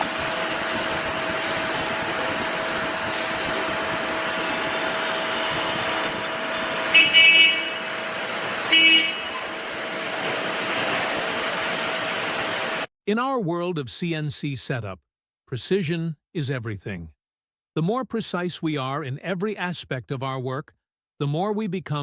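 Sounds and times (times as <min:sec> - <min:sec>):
constant hum: 0:00.0 - 0:12.9
short horn toots: 0:06.9 - 0:08.0, 0:08.6 - 0:09.6.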